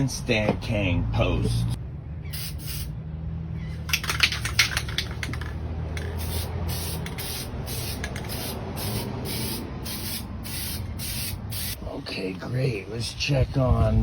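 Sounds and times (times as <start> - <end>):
spray hisses: 2.4 - 2.9, 6.2 - 11.8.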